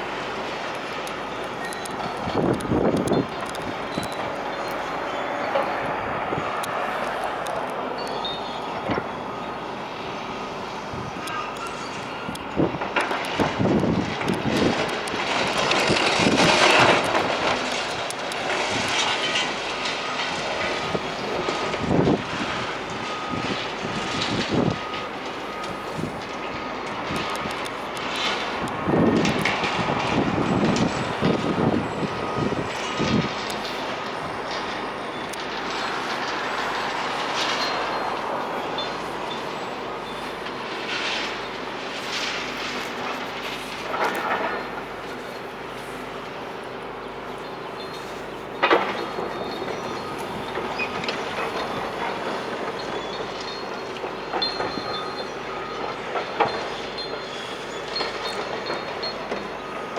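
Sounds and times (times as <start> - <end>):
demolition machinery: 0.0 - 59.9
masonry crashing and rubble falling: 12.6 - 27.2.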